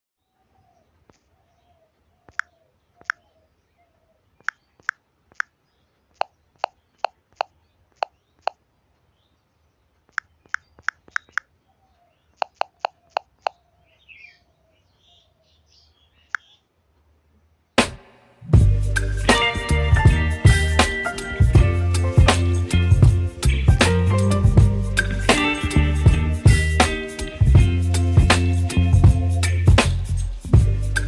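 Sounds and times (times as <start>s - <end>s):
phone keyboard key clicks: 12.4s - 13.6s.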